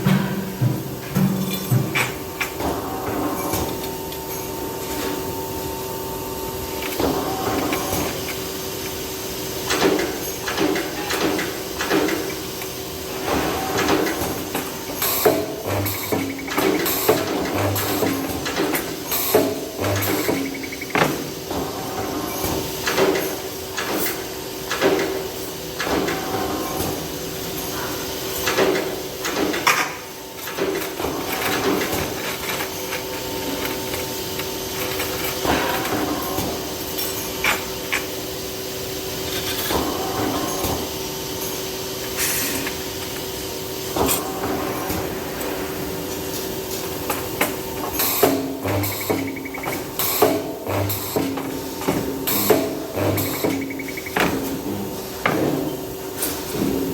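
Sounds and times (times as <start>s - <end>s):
steady machine hum: 0.0s - 28.2s, 28.8s - 56.9s
sharp metallic clunks and clicks: 48.2s - 54.5s.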